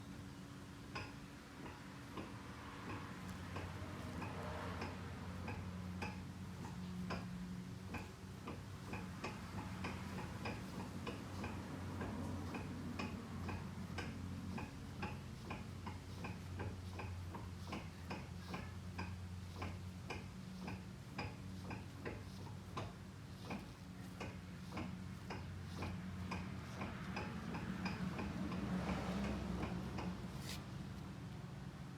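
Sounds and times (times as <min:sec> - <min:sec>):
axle knocking ticks: 0:07.9 - 0:30.6.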